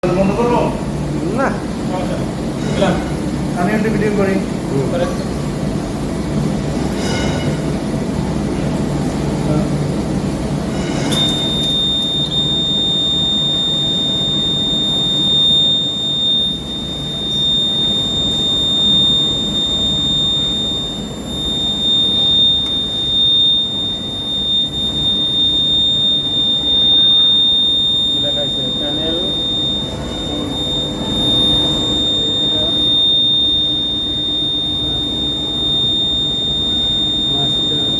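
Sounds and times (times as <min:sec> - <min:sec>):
alarm buzzer high-pitched tone: 0:02.6 - 0:03.2, 0:10.8 - 0:37.9.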